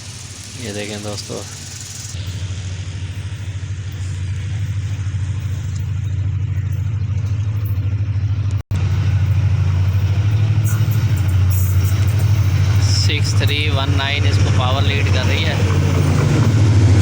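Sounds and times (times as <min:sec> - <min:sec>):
diesel locomotive engine throbbing: 0:00.0 - 0:17.0.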